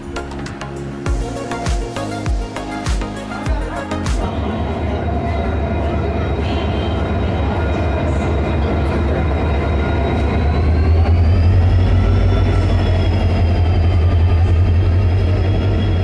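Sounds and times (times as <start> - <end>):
train rumbling: 3.5 - 16.0
high train squealing: 4.4 - 16.0.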